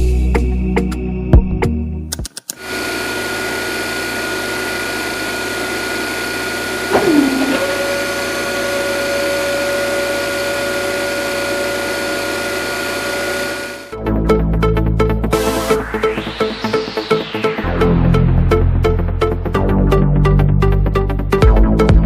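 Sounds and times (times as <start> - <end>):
small electric motor whining: 2.6 - 14.0.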